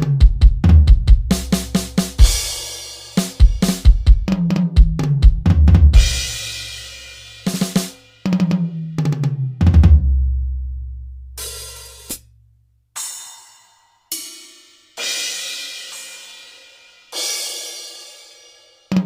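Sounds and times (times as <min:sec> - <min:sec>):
electronic drum tom fills: 0:00.0 - 0:10.4, 0:11.2 - 0:12.2.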